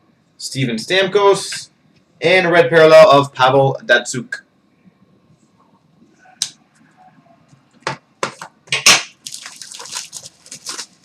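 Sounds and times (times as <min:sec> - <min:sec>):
card packaging rustling: 0:09.2 - 0:11.0.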